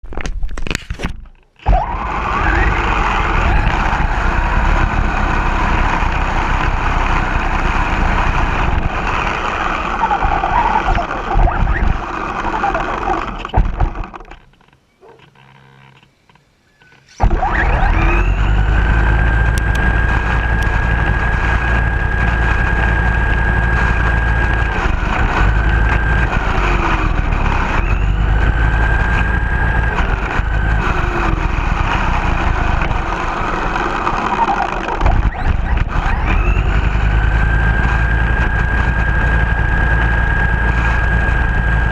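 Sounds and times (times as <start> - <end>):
radio-controlled car motor: 1.6 - 16.0, 17.1 - 41.9.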